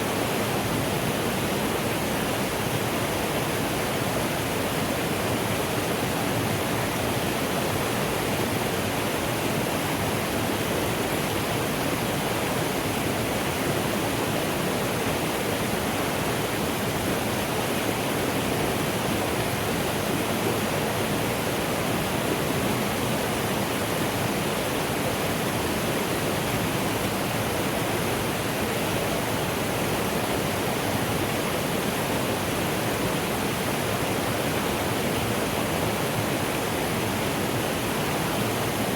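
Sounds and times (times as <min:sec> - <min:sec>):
mountain stream rushing: 0:00.0 - 0:38.9.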